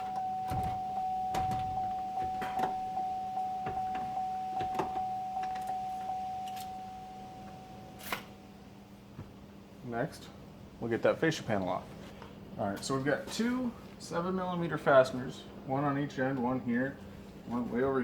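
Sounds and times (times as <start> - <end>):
vehicle warning chime pinging: 0.0 - 8.5.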